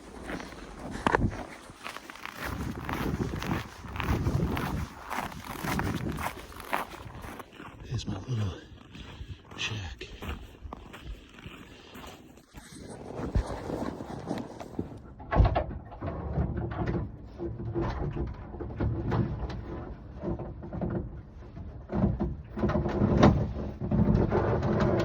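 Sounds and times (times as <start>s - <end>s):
gear being moved: 0.0s - 7.8s.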